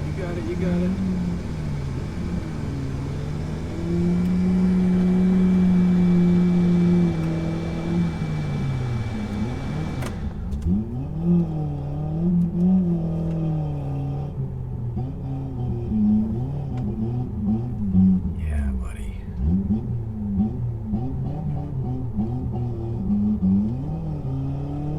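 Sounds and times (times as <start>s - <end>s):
truck engine revving: 0.0s - 13.1s.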